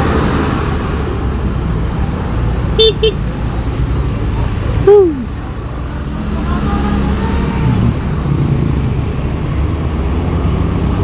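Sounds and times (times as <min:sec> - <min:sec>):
traffic engines rumbling: 0:00.0 - 0:11.0.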